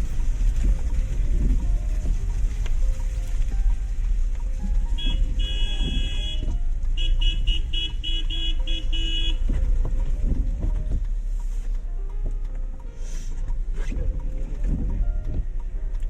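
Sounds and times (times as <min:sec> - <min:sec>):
low rumble of moving car: 0:00.0 - 0:16.0
car horn toots: 0:04.8 - 0:09.8.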